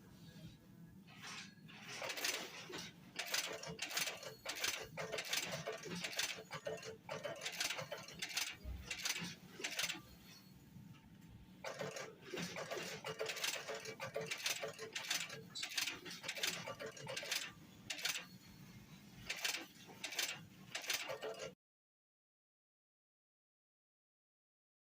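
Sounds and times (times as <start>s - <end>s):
sewing machine clattering: 1.2s - 10.1s, 11.6s - 18.4s, 19.2s - 21.6s.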